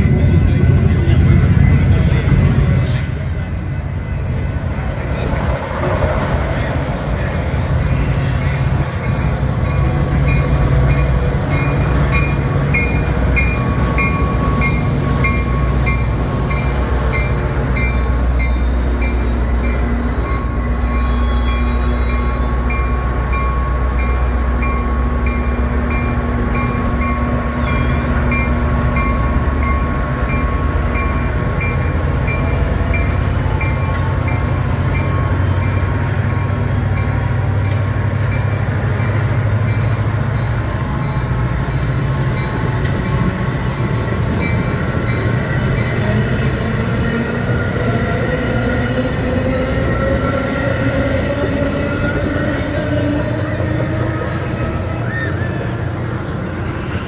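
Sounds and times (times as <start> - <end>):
diesel locomotive rumble: 0.0 - 57.0
train cars rolling by: 0.0 - 57.0
clicking of train wheels: 8.5 - 40.4, 41.0 - 43.4.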